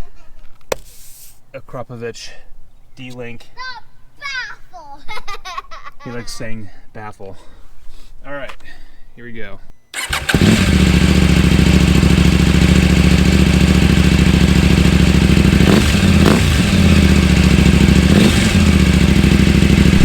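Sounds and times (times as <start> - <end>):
motorcycle engine idling and revving: 10.0 - 20.0.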